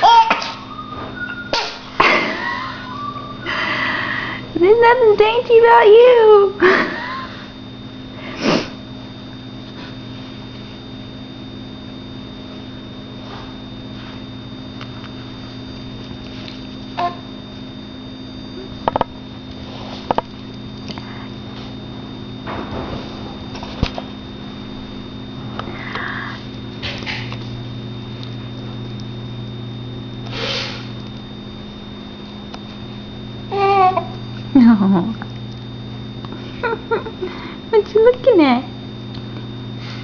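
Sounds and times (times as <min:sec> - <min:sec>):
steady mains hum: 0:00.0 - 0:40.0
baby sneezing: 0:01.6 - 0:01.9.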